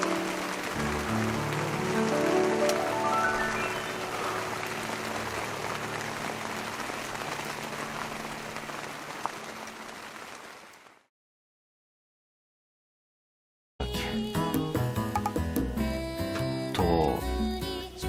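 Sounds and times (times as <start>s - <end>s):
steady rain falling: 0.0s - 11.1s.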